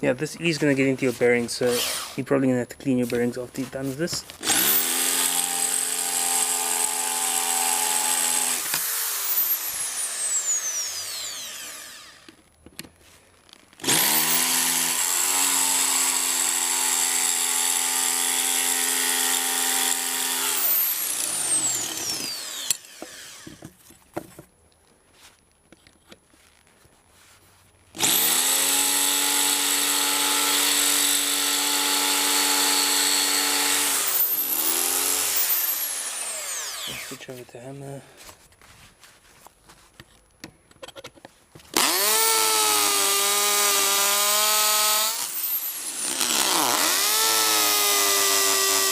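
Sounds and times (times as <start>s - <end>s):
electric drill drilling: 1.7s - 2.2s, 4.4s - 12.4s, 13.8s - 23.7s, 28.0s - 37.2s, 41.7s - 48.9s.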